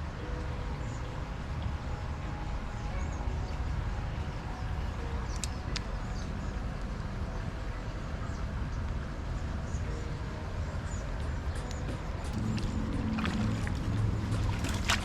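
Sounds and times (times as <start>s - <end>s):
wind or running water rumble: 0.0s - 15.0s.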